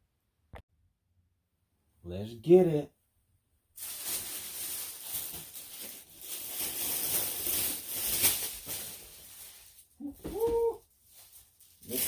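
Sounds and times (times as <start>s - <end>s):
packaging rustling and crinkling: 3.8s - 12.0s.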